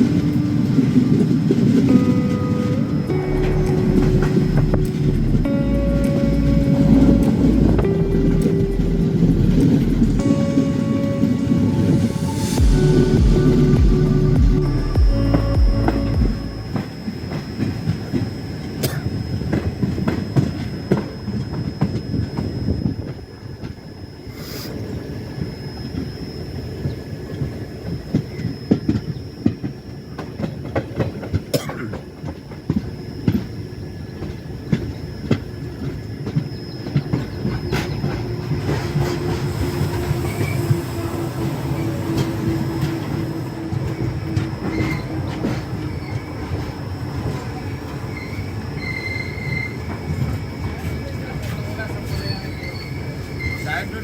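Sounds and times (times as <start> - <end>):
train wheel rumble: 0.0 - 54.0
high wheel squeals: 34.9 - 54.0.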